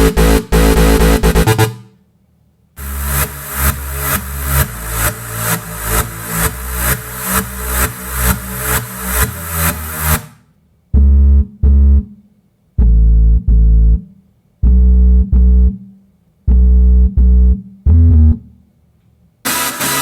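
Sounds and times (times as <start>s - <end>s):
heavy deep bass: 0.0s - 1.8s, 2.8s - 9.8s, 11.0s - 12.1s, 12.8s - 14.0s, 14.6s - 15.8s, 16.5s - 18.4s
beat-driven electronic track: 0.0s - 1.9s, 2.8s - 10.4s, 19.5s - 20.0s
synthesizer keyboard chords: 0.0s - 1.9s, 2.8s - 10.2s, 19.5s - 20.0s.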